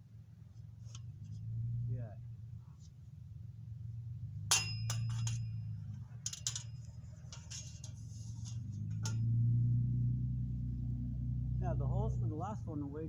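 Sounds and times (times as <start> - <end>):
low steady hum: 0.0 - 13.0
metallic clinks and clanks: 4.5 - 9.6.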